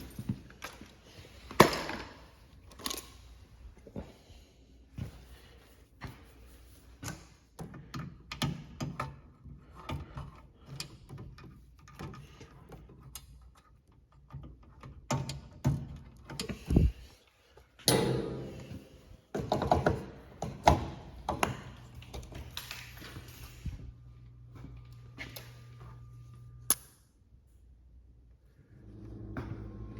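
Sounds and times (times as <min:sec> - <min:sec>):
tools clicking and knocking: 0:07.0 - 0:16.9, 0:17.8 - 0:22.9
low steady hum: 0:20.1 - 0:29.9.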